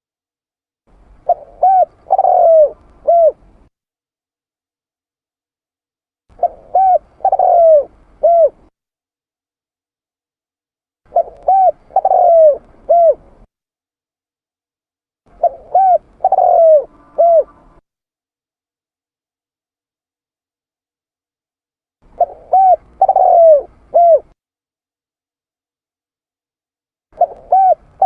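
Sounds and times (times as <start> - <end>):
dove cooing: 1.2 - 3.6, 6.3 - 8.7, 11.1 - 13.5, 15.3 - 17.8, 22.1 - 24.4, 27.2 - 28.0.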